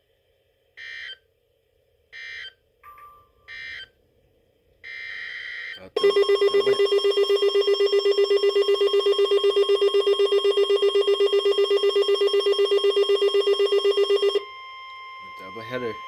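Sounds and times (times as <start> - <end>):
pulsing buzzing alarm tone: 4.9 - 16.0.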